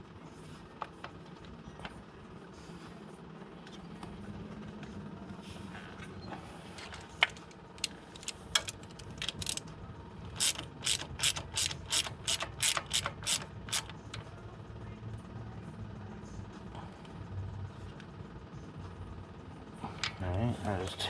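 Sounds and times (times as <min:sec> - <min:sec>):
ratchet wrench clicking: 0:07.8 - 0:09.6, 0:10.4 - 0:14.2.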